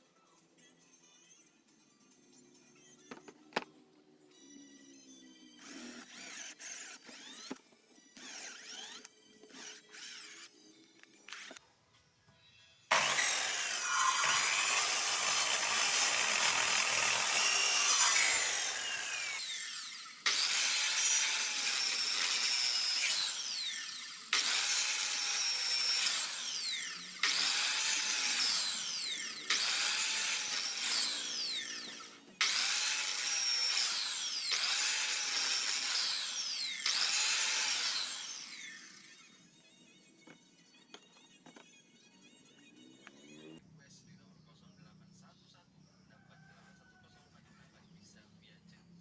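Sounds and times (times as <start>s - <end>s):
electric power tool cutting wood: 5.0s - 11.6s, 12.9s - 43.6s.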